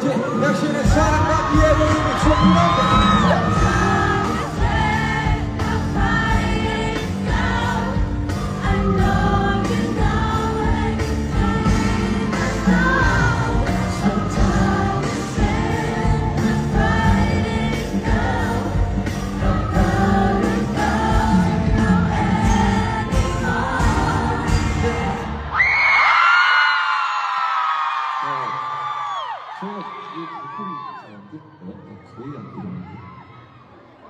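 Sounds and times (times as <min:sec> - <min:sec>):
pop music over a pa: 0:00.0 - 0:26.4
person singing: 0:08.5 - 0:25.6.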